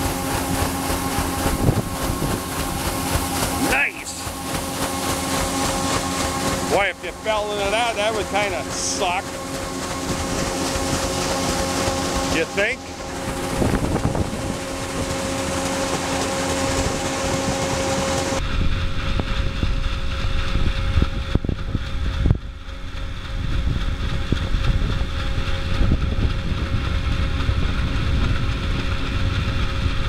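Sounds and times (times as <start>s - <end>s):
wind noise on microphone: 0.0s - 3.7s, 13.0s - 30.0s
boat engine drone: 0.0s - 30.0s.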